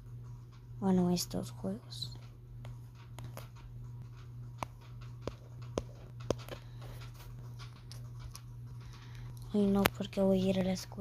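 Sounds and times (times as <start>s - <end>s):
steady low hum: 0.0s - 11.0s
sharp clicks and taps: 2.2s - 8.5s.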